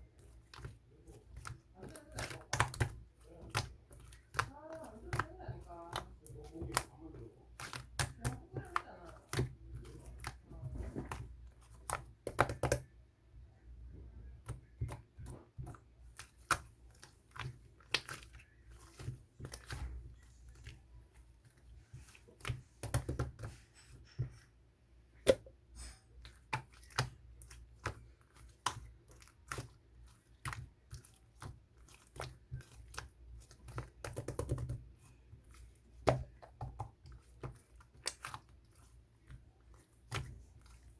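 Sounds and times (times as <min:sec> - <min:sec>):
sticky slime clicking and popping: 0:11.0 - 0:12.9, 0:26.4 - 0:34.8.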